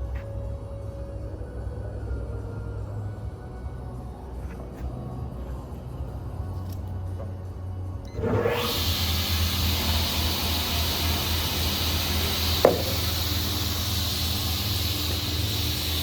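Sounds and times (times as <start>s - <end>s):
low motor hum: 0.0s - 16.0s
band saw hiss: 8.6s - 16.0s
sharp knock: 12.6s - 13.0s.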